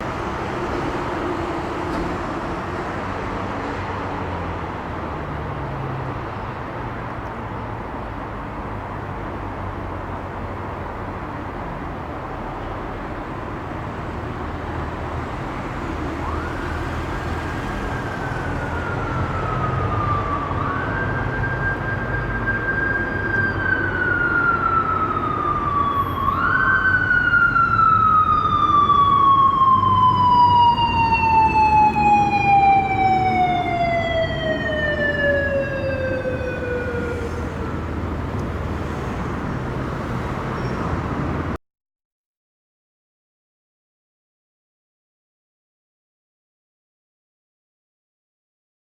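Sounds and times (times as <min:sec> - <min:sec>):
low vehicle and road rumble: 0:00.0 - 0:41.6
motorcycle siren wailing: 0:16.1 - 0:38.0.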